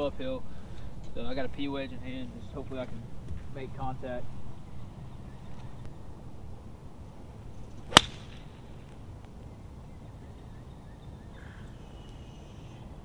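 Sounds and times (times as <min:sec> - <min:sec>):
golf club swing swish: 0:07.9 - 0:08.4
golf club hitting ball: 0:07.9 - 0:08.6.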